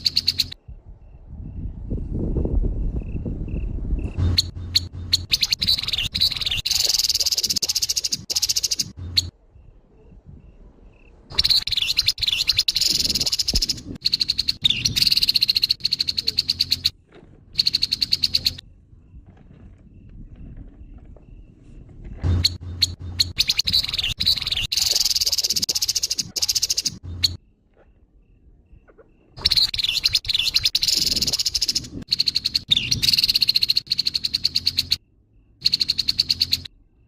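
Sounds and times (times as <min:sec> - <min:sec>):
low rumble: 0:00.7 - 0:06.6, 0:18.6 - 0:24.7
bird rattling chatter: 0:04.2 - 0:09.3, 0:22.4 - 0:27.1.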